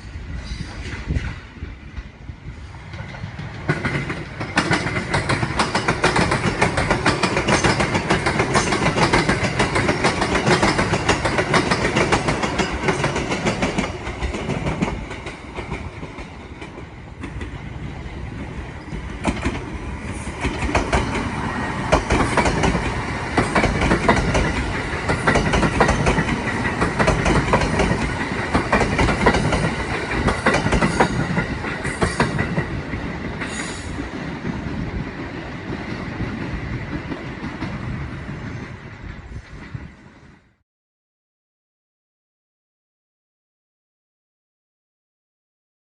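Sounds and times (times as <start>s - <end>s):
train wheels clattering over rail joints: 2.8s - 17.7s, 18.4s - 40.0s.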